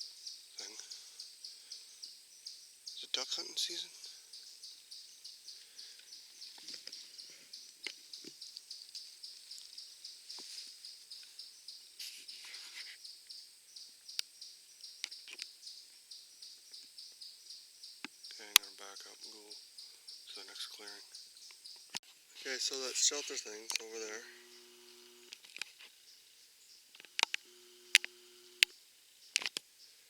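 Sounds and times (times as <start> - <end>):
crickets chirping: 0.0 - 30.0
brief rustles: 12.0 - 13.0
sharp clicks: 26.9 - 28.7.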